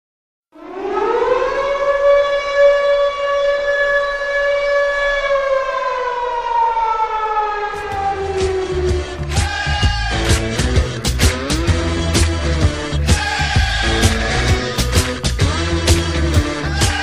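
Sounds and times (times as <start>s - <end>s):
siren goal horn: 0.5s - 9.3s.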